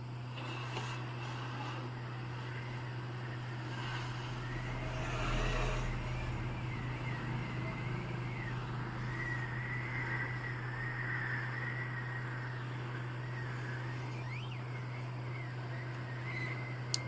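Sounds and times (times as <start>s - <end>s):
hot-air blower running: 0.0s - 17.0s.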